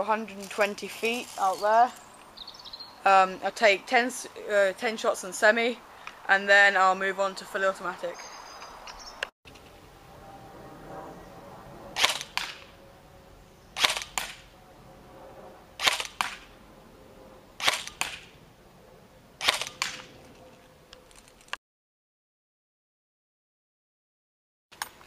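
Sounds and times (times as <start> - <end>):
airsoft rifle single shots: 12.0 - 12.7, 13.8 - 14.4, 15.8 - 16.5, 17.6 - 18.3, 19.4 - 20.1.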